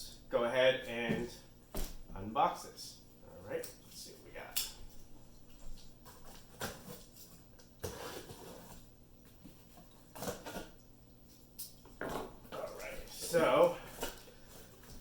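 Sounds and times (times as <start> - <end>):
box packing rustling and scraping: 6.0 - 10.7, 12.1 - 15.0.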